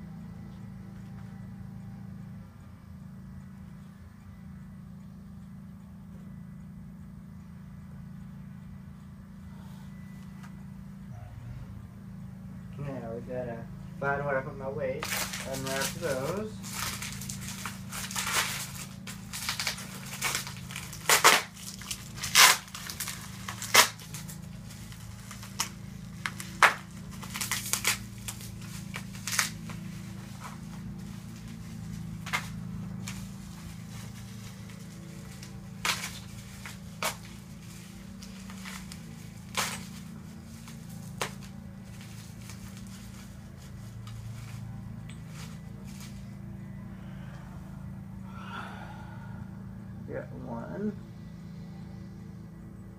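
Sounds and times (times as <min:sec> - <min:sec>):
packing material crinkling and tearing: 0:15.0 - 0:46.3.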